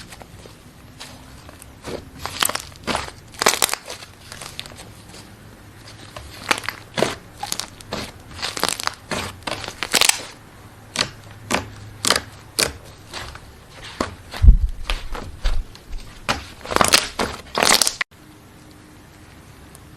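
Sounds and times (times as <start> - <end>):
slime crackling and crunching: 0.0 - 18.1.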